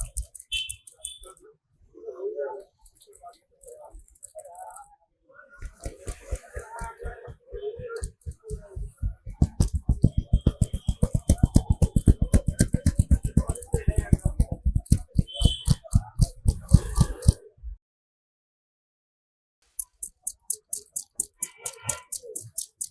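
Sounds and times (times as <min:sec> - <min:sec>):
rapid hand slaps on body: 0:05.6 - 0:17.4.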